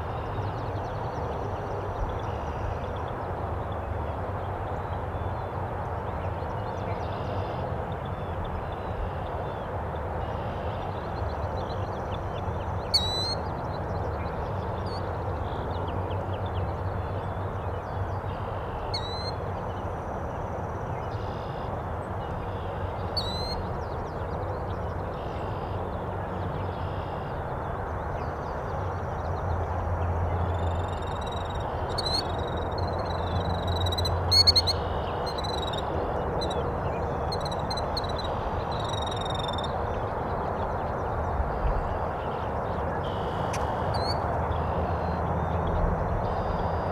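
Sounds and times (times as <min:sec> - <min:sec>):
outdoor background rumble and hiss: 0:00.0 - 0:46.9
wild birds chirping: 0:30.3 - 0:46.8.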